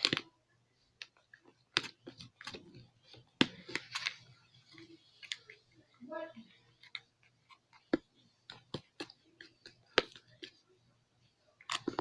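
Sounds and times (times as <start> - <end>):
stirring tool tapping container: 1.0 - 10.8.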